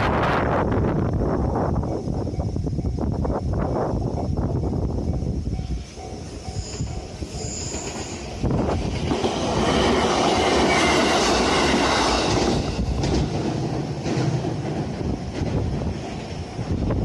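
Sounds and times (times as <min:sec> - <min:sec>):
train running noise: 0:00.0 - 0:17.0
train wheel clicks over rail joints: 0:05.0 - 0:16.9.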